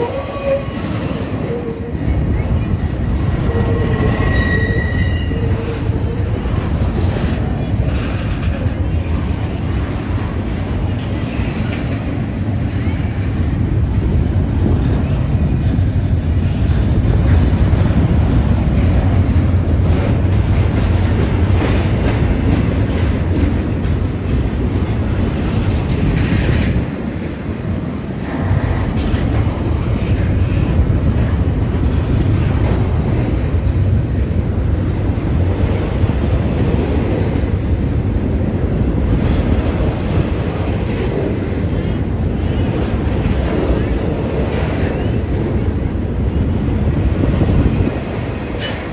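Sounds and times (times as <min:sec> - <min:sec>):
freight train rumbling past: 0:00.0 - 0:48.9
wheels clacking over rail joints: 0:06.6 - 0:48.9.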